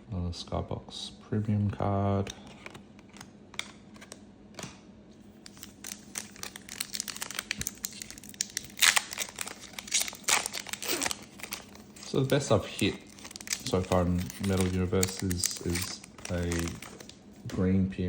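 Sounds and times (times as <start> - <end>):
card pack wrapper crinkling: 5.4 - 17.5.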